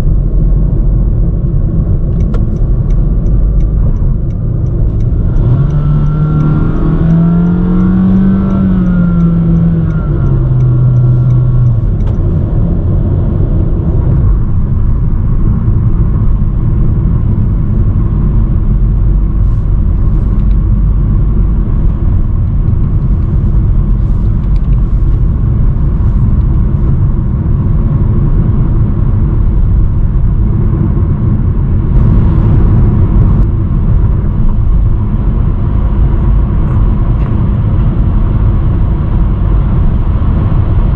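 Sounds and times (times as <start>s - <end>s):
car engine accelerating: 0.0s - 40.9s
road and tyre noise: 0.0s - 40.9s.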